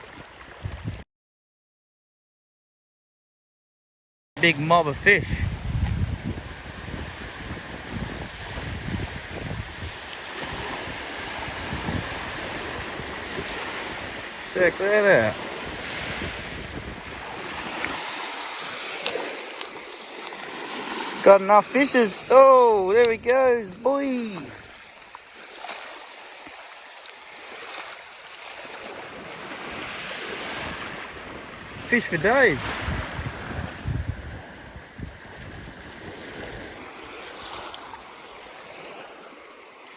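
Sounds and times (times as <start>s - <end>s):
small waves washing: 0.0s - 1.0s, 4.4s - 39.9s
wind buffeting microphone: 0.5s - 1.0s, 4.8s - 18.9s, 29.1s - 37.7s
seawater lapping around legs: 5.8s - 31.5s, 35.2s - 39.9s
small splashes: 24.5s - 29.2s.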